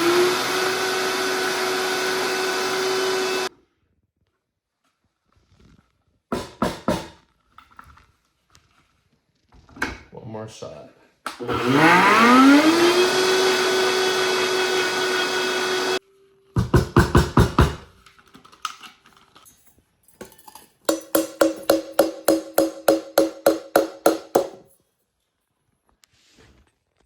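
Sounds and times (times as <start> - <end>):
blender motor whining: 0.0 - 3.5, 11.4 - 16.0.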